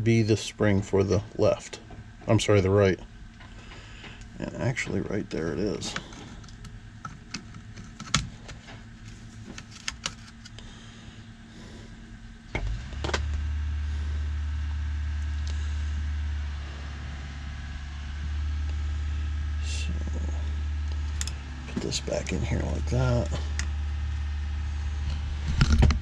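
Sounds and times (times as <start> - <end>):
low rumble: 10.4 - 26.0.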